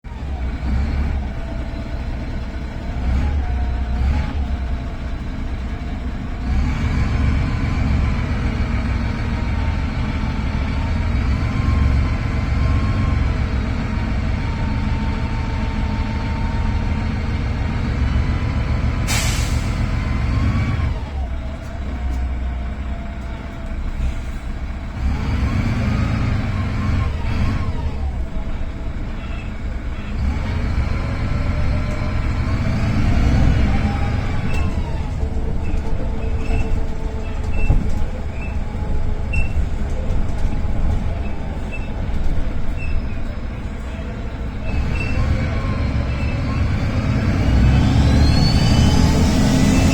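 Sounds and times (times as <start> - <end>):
bus engine under load: 0.0 - 49.9
turbocharger whistling: 44.7 - 49.9.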